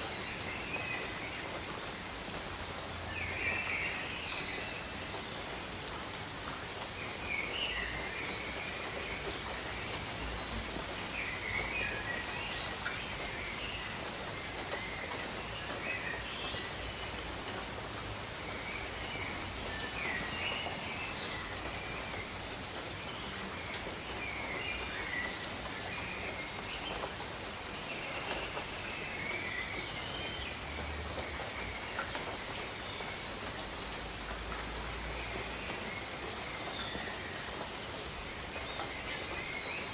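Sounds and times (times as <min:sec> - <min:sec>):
gentle rain falling: 0:00.0 - 0:39.9
raindrop ticks: 0:30.6 - 0:39.5.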